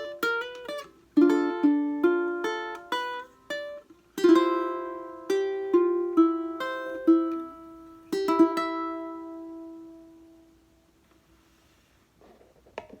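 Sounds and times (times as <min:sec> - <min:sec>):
ukulele notes and chord: 0:00.0 - 0:10.5
faint rustle: 0:11.0 - 0:13.0.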